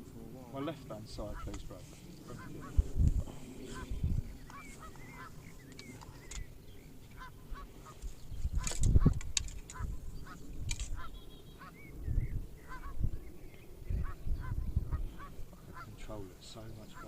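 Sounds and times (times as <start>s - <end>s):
geese honking: 1.0s - 2.9s, 3.6s - 6.3s, 7.0s - 12.0s, 12.6s - 13.1s, 13.9s - 17.0s.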